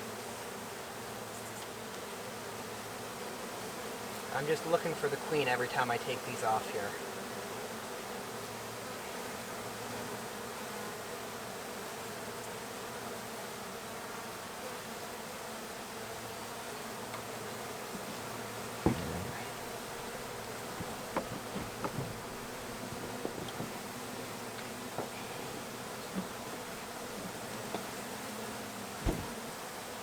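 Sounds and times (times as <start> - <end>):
bees buzzing: 0.1 - 30.0
sharp knock: 18.8 - 19.6, 29.0 - 29.4.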